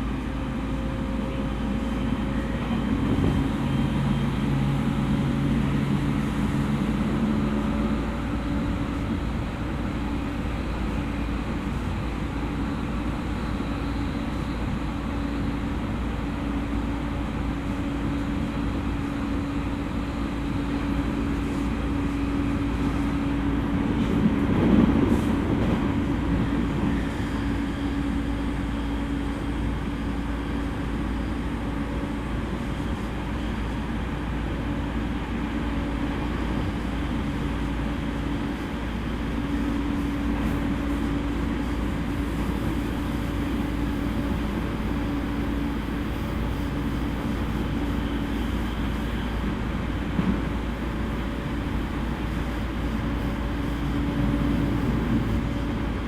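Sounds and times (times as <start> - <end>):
train wheels rumbling on rail: 0.0 - 56.0.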